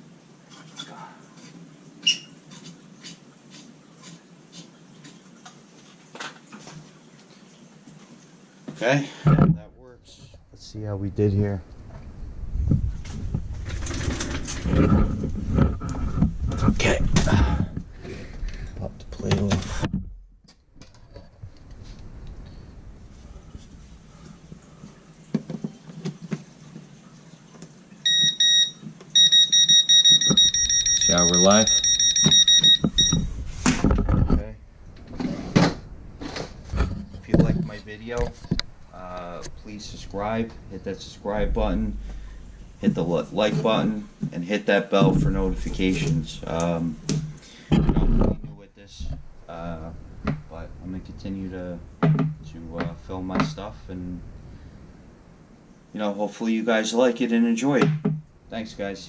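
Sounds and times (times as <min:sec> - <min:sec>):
voltage tester beeping: 0:28.1 - 0:33.3.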